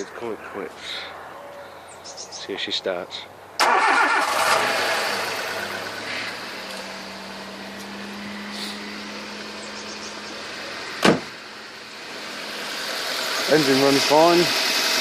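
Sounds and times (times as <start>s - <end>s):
car engine idling: 3.6s - 15.0s
sharp knock: 11.0s - 11.3s.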